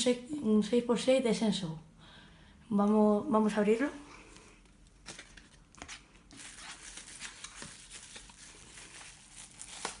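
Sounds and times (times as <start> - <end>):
packaging rustling: 4.7 - 10.0.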